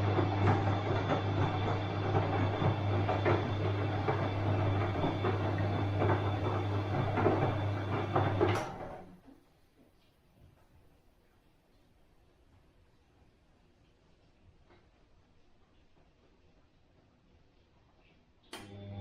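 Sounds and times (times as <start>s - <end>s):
tumbling drum knocks and clatter: 0.0s - 8.7s
washing machine motor hum: 0.0s - 9.4s, 18.5s - 19.0s.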